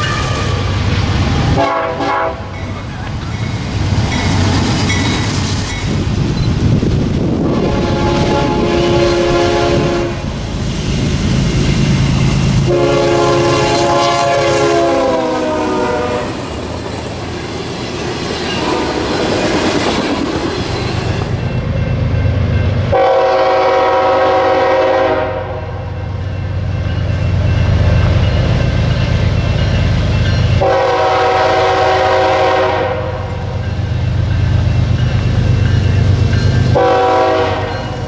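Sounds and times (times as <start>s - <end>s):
train rumbling past: 0.0s - 38.0s
locomotive air horn blasts: 1.5s - 2.5s, 7.4s - 10.3s, 12.6s - 16.4s, 22.9s - 25.8s, 30.6s - 33.4s, 36.7s - 38.0s.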